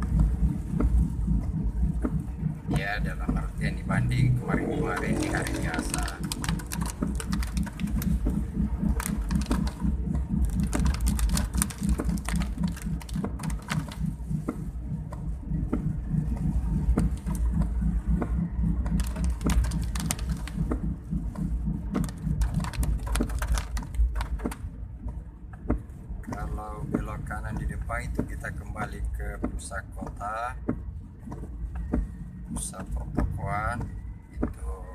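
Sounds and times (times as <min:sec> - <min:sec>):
raindrops ticking on vehicle: 0:00.0 - 0:24.7
vehicle rumble: 0:00.0 - 0:34.9.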